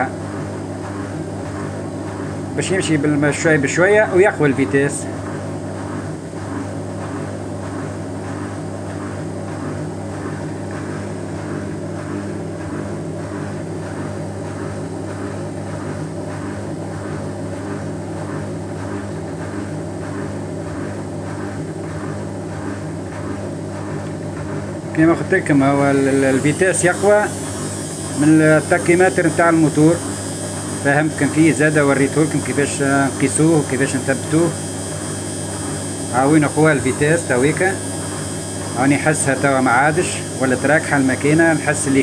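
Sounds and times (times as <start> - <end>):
washing machine drum turning: 22.4 - 42.0.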